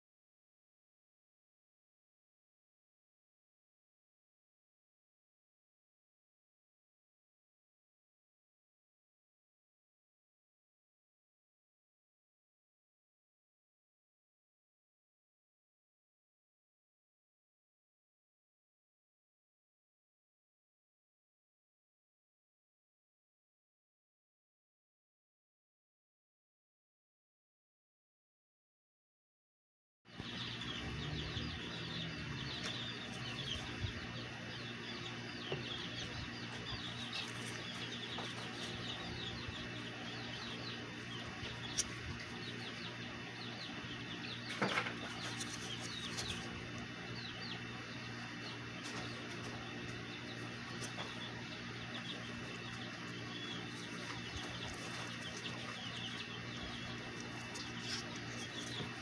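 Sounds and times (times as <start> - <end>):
steady low hum: 30.1 - 59.0.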